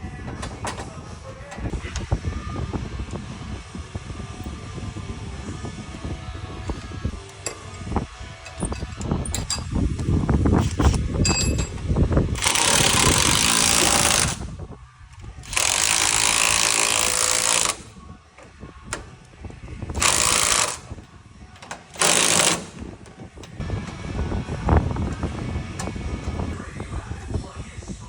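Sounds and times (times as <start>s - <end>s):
power tool bursts: 12.4s - 14.4s, 20.0s - 20.8s, 21.9s - 22.8s.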